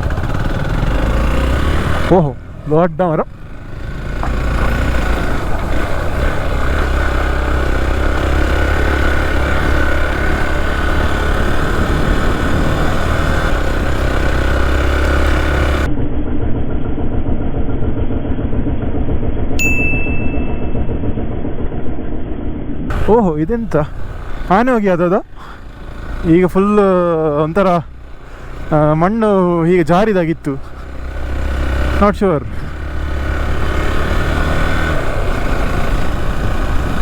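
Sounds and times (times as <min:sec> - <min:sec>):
motorcycle engine running: 0:00.0 - 0:37.0
short high beep: 0:19.6 - 0:21.1.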